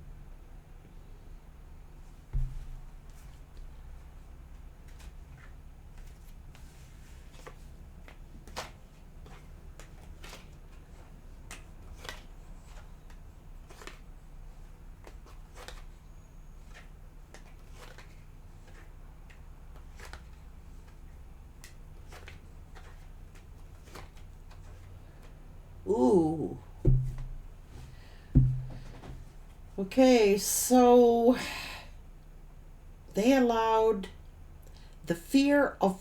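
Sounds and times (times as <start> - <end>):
cards being shuffled: 4.8 - 16.0, 16.6 - 21.0, 21.6 - 25.4.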